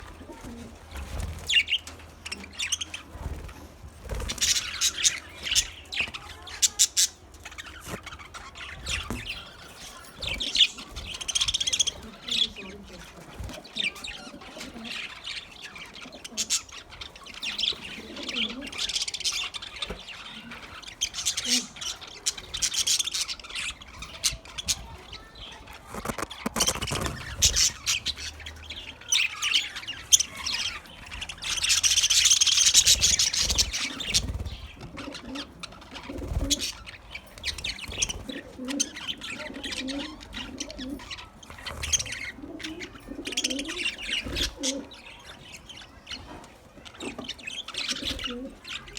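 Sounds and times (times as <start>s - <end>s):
budgerigars chirping and chattering: 0.0s - 48.9s.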